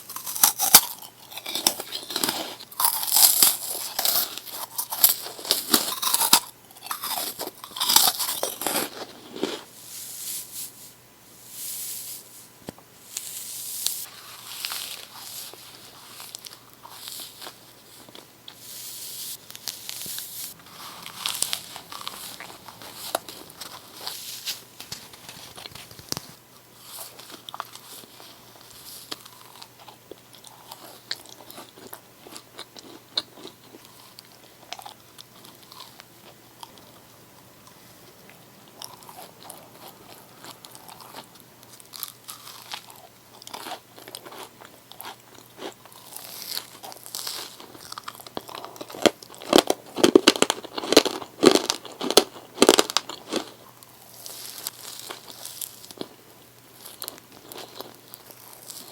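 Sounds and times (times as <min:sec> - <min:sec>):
chewing: 0:00.0 - 0:09.7, 0:19.4 - 0:58.9
crunchy bites: 0:00.0 - 0:09.7, 0:19.4 - 0:58.9.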